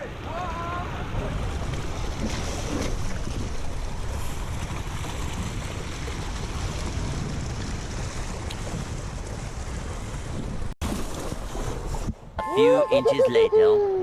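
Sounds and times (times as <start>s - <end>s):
rushing water: 0.0s - 13.5s
wind buffeting microphone: 0.2s - 10.8s.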